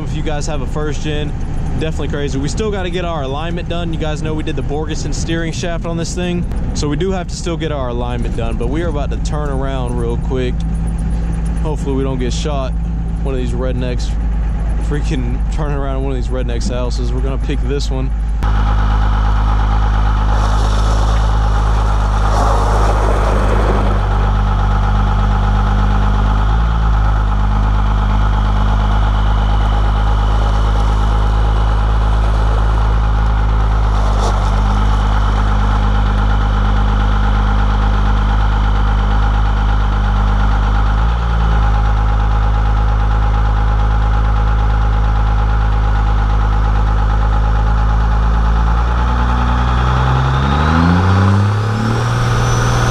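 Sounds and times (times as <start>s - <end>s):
diesel engine running: 0.0s - 52.9s
high turbo whistle: 20.1s - 25.2s, 50.4s - 52.9s.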